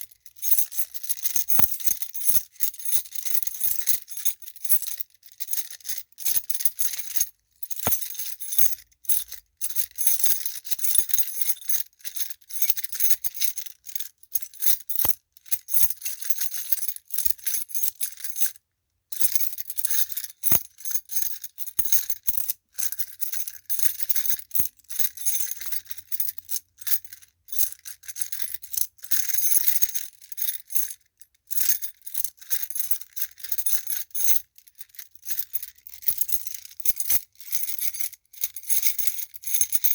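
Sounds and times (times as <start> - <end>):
keys jangling: 7.0 - 8.8.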